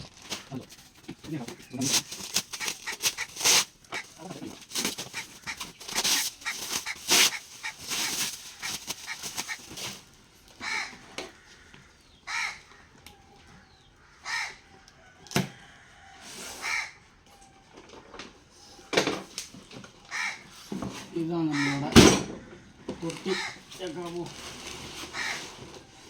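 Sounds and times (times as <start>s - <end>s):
short crackly noises: 0.0s - 11.7s
crow cawing: 1.6s - 10.0s, 10.6s - 14.7s, 16.6s - 17.0s, 20.0s - 20.7s, 21.4s - 24.0s, 25.0s - 25.6s.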